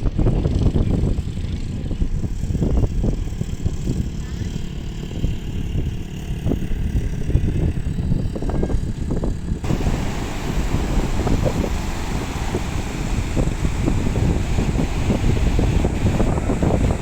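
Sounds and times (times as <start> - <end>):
wind buffeting microphone: 5.3 - 17.0.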